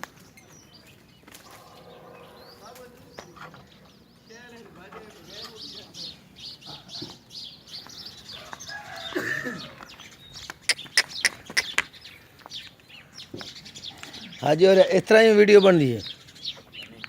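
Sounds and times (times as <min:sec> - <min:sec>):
small birds chirping: 0:00.0 - 0:17.0
sharp clicking bird notes: 0:09.7 - 0:14.4.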